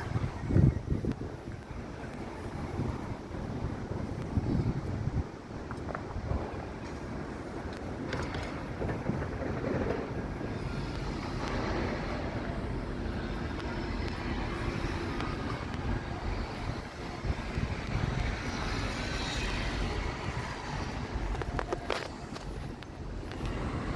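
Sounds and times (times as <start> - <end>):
city background rumble and hiss: 0.0 - 23.9.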